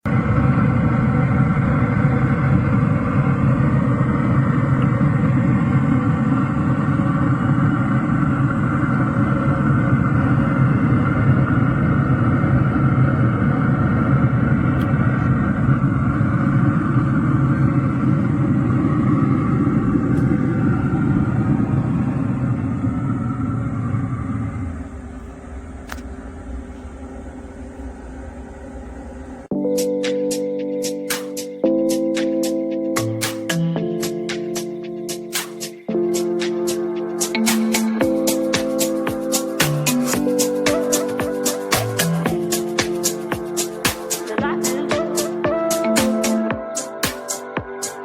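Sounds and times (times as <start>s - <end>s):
low mechanical rumble: 0.0s - 30.0s
constant hum: 0.0s - 48.0s.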